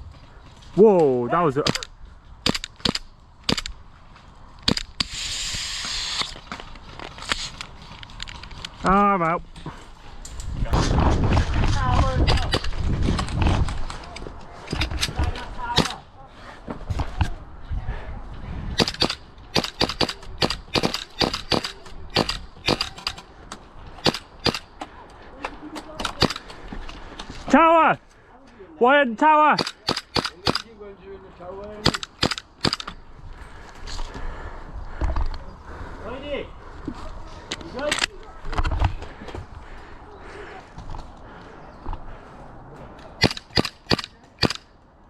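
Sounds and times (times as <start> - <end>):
hiss: 5.0 - 6.4
airsoft gun shots: 18.8 - 23.2, 43.2 - 44.6.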